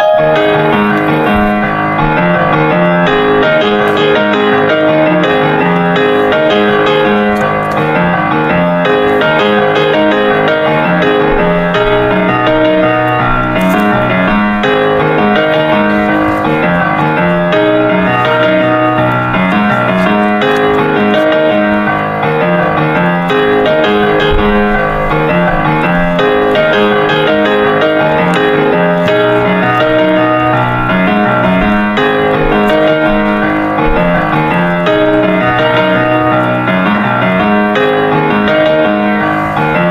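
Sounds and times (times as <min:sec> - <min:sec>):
piano music: 0:00.0 - 0:39.9.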